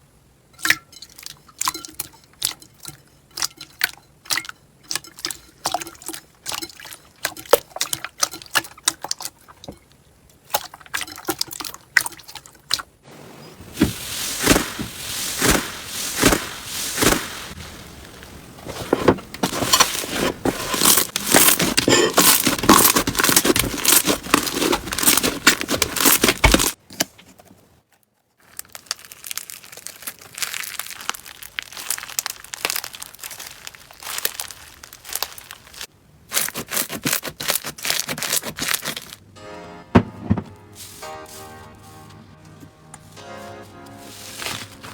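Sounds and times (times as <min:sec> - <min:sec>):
slime crackling and popping: 0:20.6 - 0:26.8, 0:28.4 - 0:39.2.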